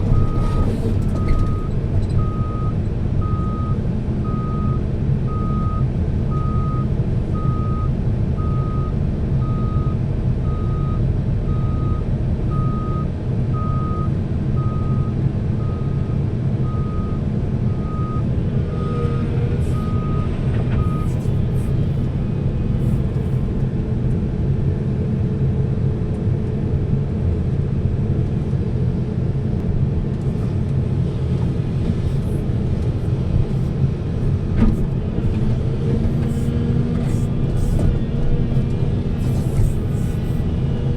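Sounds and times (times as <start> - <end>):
diesel truck engine droning: 0.0 - 25.5, 29.0 - 40.9
reversing alarm beeping: 0.1 - 21.1.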